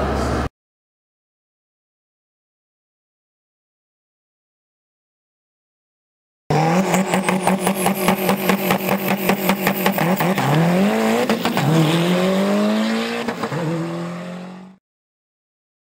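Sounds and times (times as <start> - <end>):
car engine accelerating hard: 6.5 - 14.8.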